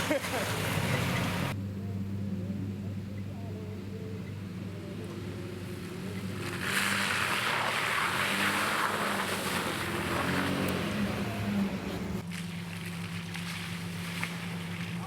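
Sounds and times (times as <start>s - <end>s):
truck engine running: 0.0s - 15.0s
splash of water and mud: 6.3s - 11.4s, 12.2s - 15.0s.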